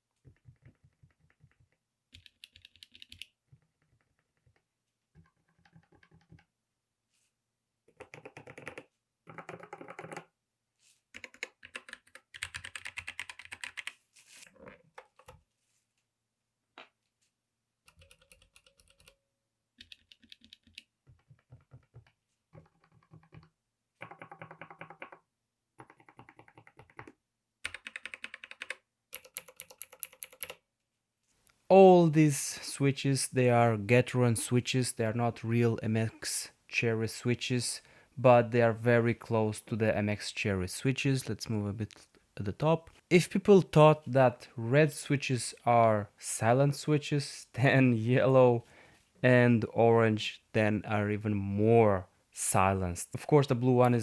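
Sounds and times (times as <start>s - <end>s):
mechanical keyboard key clicks: 27.7s - 30.6s.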